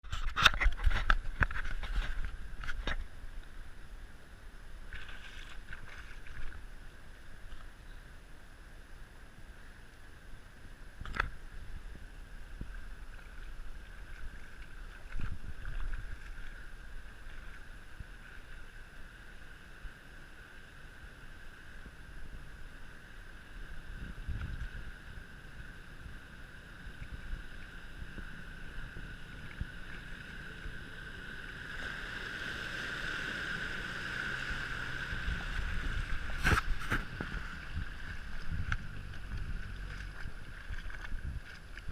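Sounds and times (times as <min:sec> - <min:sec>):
vehicle motor whine and rumble: 0:10.6 - 0:41.9.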